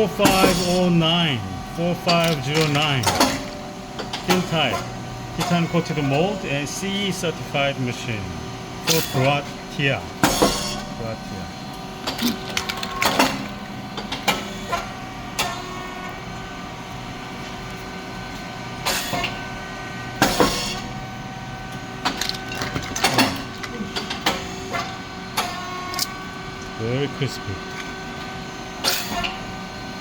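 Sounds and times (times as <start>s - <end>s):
machine hum: 0.0s - 30.0s
machine clanks and clicks: 0.2s - 1.0s, 1.9s - 6.3s, 8.8s - 9.4s, 10.1s - 10.9s, 12.0s - 15.7s, 20.2s - 20.9s, 21.7s - 26.2s.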